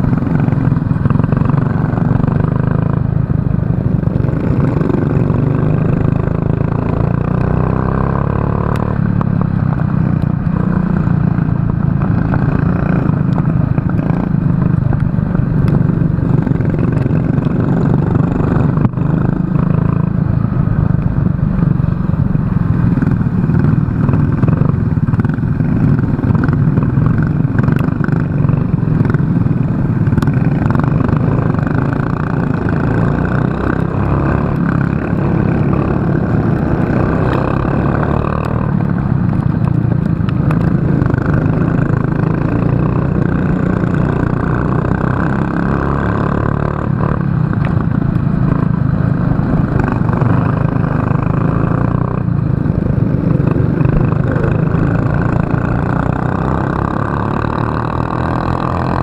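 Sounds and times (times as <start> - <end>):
kart engine running hard: 0.0 - 59.0
kart rattling: 9.1 - 59.0.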